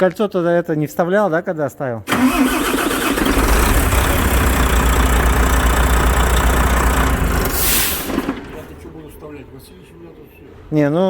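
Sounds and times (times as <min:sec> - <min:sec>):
diesel truck engine idling: 0:02.1 - 0:09.1.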